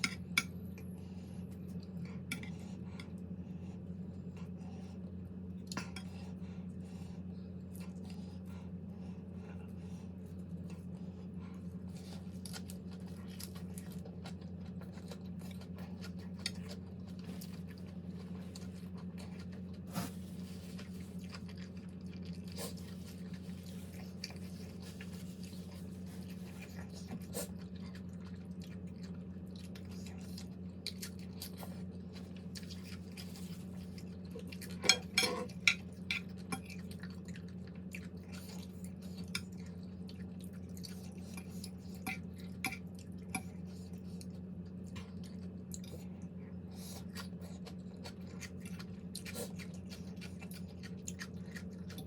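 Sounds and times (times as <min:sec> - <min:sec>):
steady low hum: 0:00.0 - 0:52.0
person chewing: 0:09.6 - 0:52.0
cutlery clinking against dish: 0:34.8 - 0:35.8.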